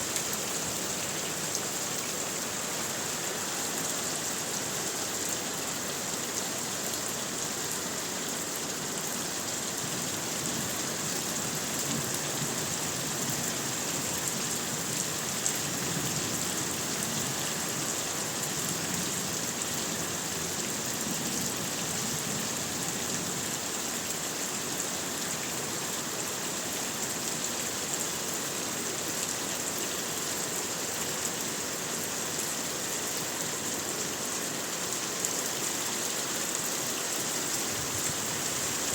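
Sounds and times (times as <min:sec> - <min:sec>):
heavy rain falling: 0:31.4 - 0:38.9.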